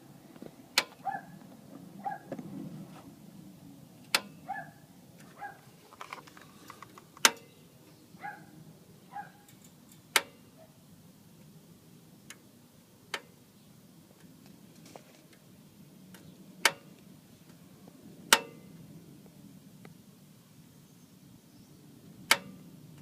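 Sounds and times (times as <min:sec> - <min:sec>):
exhaust ticking as it cools: 0:03.9 - 0:04.4, 0:11.3 - 0:14.5, 0:15.3 - 0:17.6.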